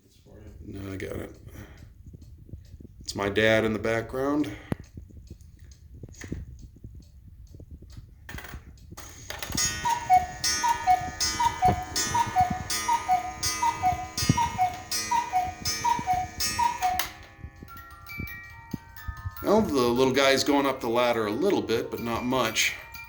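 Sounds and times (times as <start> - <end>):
clock ticking: 0.4 - 8.0, 9.5 - 23.0
cuckoo clock calling: 9.0 - 23.0.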